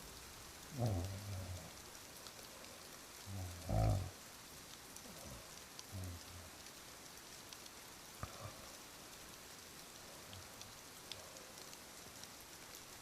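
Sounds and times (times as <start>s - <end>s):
faint steady rain: 0.0s - 13.0s
person snoring: 0.7s - 1.7s, 3.3s - 4.1s.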